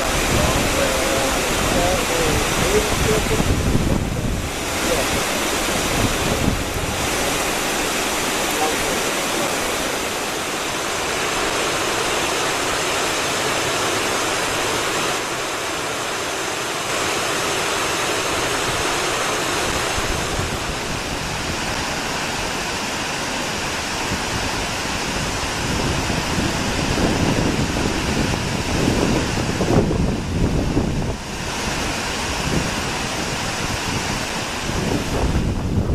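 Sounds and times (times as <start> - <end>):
wind buffeting microphone: 0.0 - 11.3, 19.6 - 35.9
waterfall rushing: 0.0 - 35.9.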